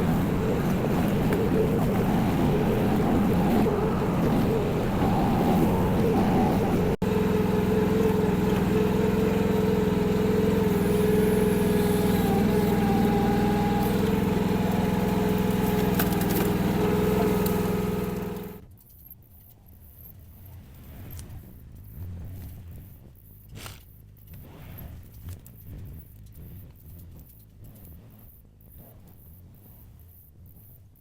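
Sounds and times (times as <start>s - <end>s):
excavator engine running: 0.0s - 18.7s.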